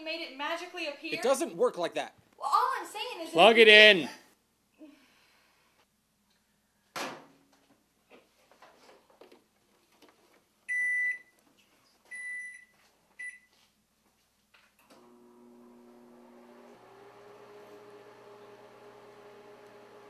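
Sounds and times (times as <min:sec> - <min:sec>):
microwave oven beeping: 0:15.0 - 0:20.0.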